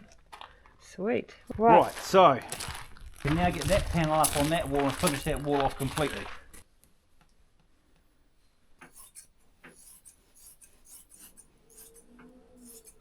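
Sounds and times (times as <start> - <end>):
materials scraping and rubbing: 1.5 - 6.6, 8.8 - 13.0.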